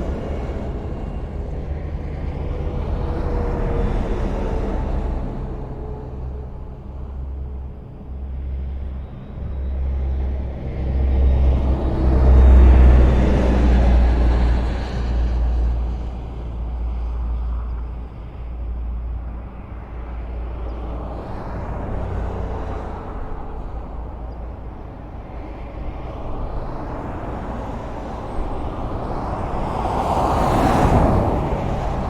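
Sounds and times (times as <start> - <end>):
highway traffic rumble: 0.0 - 32.0
vehicle passing close: 27.2 - 32.0.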